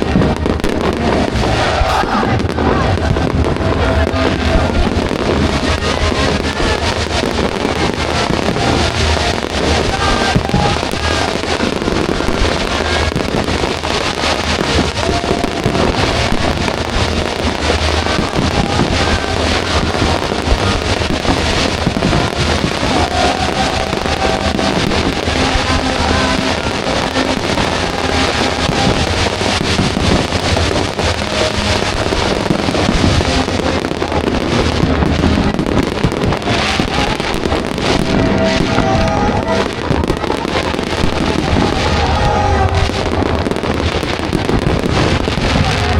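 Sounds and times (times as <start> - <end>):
fireworks crackling and popping: 0.0 - 45.9
music playing: 0.0 - 45.9.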